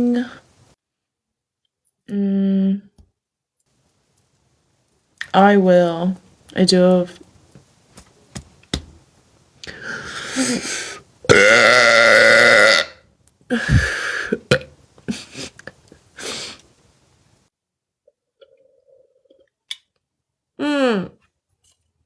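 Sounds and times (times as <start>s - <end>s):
woman belching: 11.3s - 14.7s.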